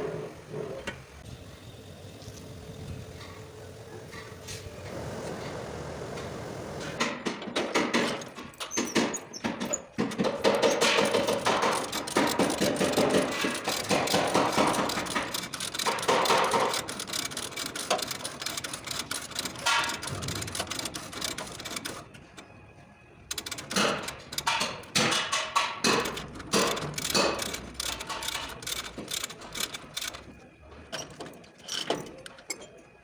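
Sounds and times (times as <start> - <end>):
hammering on car metal: 7.0 - 8.3, 8.9 - 15.3.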